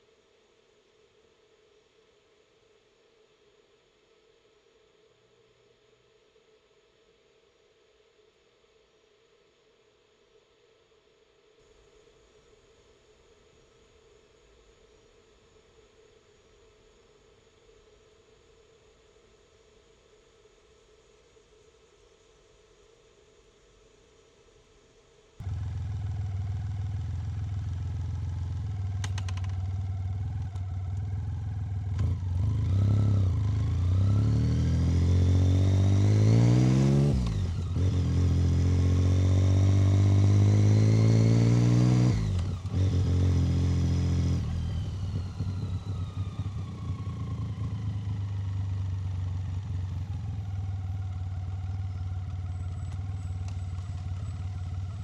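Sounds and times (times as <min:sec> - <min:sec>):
motorcycle engine revving: 0:25.4 - 0:55.0.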